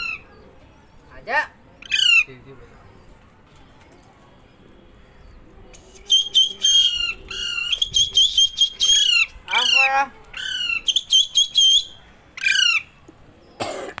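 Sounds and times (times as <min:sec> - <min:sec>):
parrot squawking: 0:01.8 - 0:02.3.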